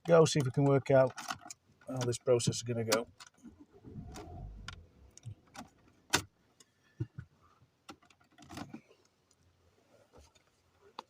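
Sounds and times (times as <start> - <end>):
low handling rumble: 3.6 - 6.1.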